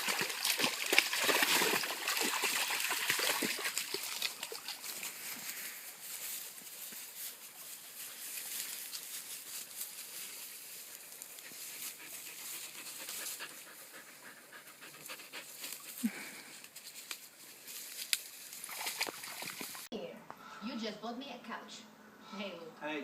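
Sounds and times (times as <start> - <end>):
puppy panting: 11.4 - 16.2.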